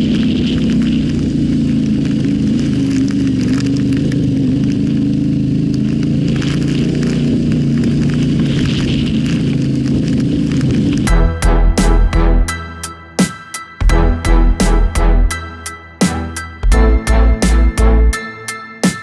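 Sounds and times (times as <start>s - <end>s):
motorcycle engine running: 0.0s - 10.4s
gravel crackling under tyres: 0.0s - 11.1s.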